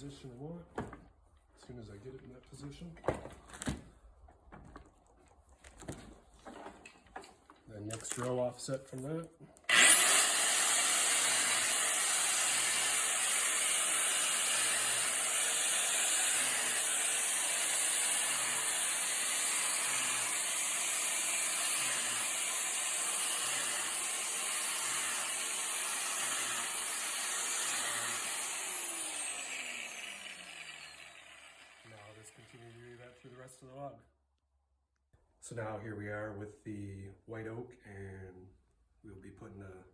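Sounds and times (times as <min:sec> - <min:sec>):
angle grinder drilling into log: 0:09.7 - 0:33.5.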